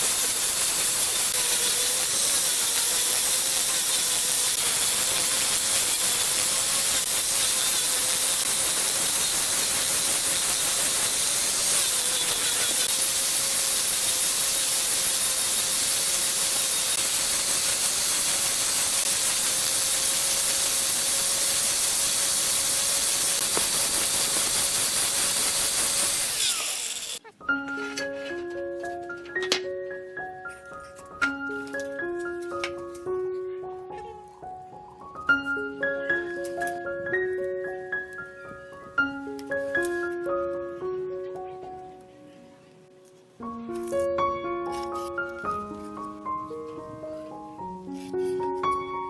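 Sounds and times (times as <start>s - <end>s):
electric power tool motor whine: 0.0s - 27.3s.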